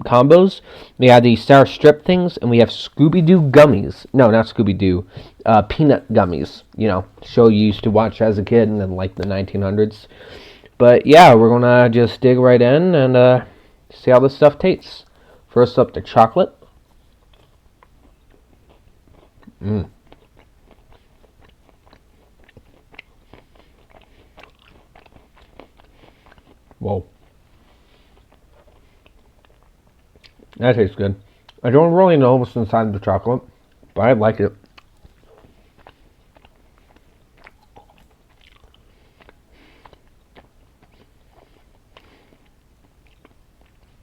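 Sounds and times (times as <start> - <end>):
person chewing chocolate: 16.5 - 30.6, 31.2 - 31.7, 33.5 - 34.0, 34.6 - 44.0.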